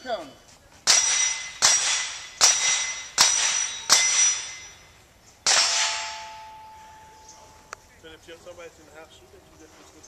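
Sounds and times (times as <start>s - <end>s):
rifle shots: 0.9s - 4.7s
steel plate ringing clang: 0.9s - 7.6s.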